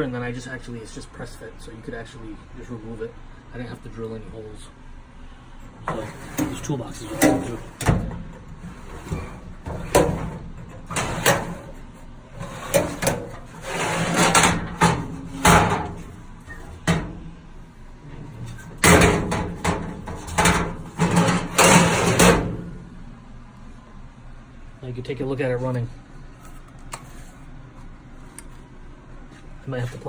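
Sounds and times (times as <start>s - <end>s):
drawer sliding rasp: 5.8s - 17.0s, 18.2s - 22.6s
steel drawers clunking shut: 5.8s - 17.4s, 18.1s - 22.8s.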